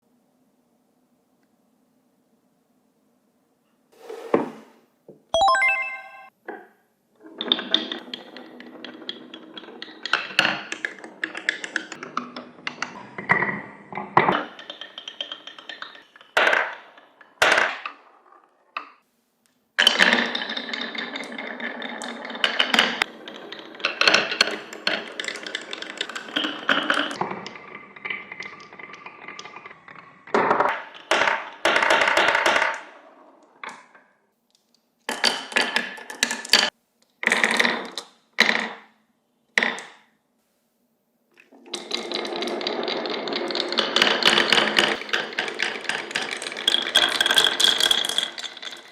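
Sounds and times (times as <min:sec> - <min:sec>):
marbles rolling on wooden tracks: 0:07.2 - 0:19.0, 0:19.8 - 0:34.1, 0:35.1 - 0:39.0, 0:41.3 - 0:48.9.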